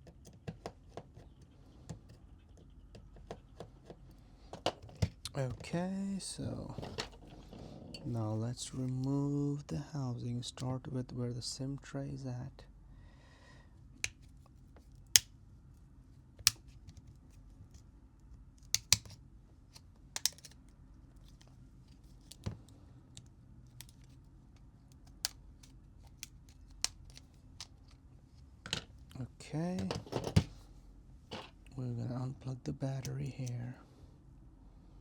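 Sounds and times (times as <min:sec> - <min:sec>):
plastic clicks and snaps: 0:20.2 - 0:20.6.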